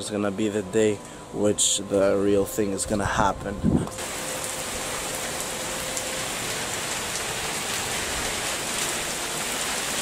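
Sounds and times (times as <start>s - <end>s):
rain pattering: 3.8s - 10.0s.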